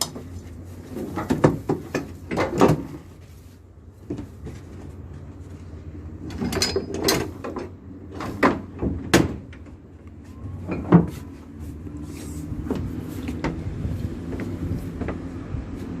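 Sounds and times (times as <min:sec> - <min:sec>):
loud clanks and knocks: 0:01.0 - 0:03.1, 0:06.3 - 0:09.8, 0:10.7 - 0:11.2
boat engine hum: 0:09.7 - 0:16.0.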